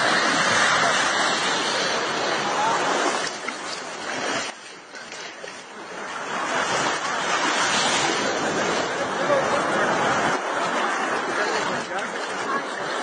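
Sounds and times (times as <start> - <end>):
surf breaking: 0.0 - 13.0.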